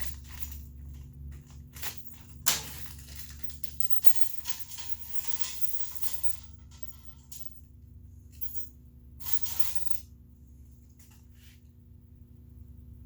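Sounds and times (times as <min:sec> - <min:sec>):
hardware clicking and rattling: 0:00.0 - 0:07.6
steady low hum: 0:00.0 - 0:13.0.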